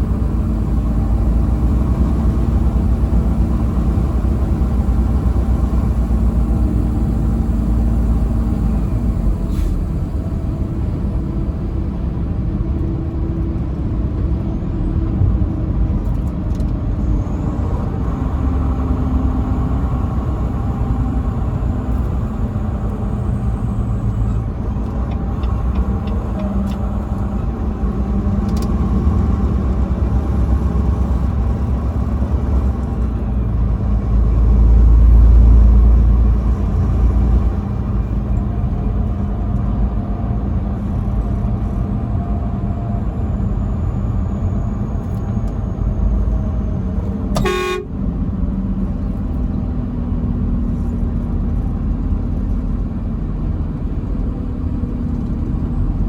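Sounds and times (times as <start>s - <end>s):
truck engine and road rumble: 0.0s - 56.0s
short horn toot: 47.4s - 47.9s.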